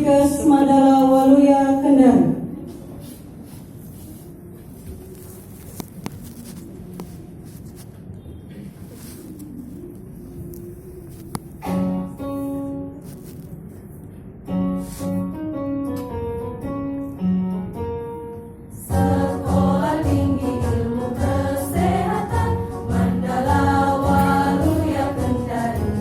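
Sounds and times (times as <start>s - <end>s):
choir singing: 18.8s - 26.0s.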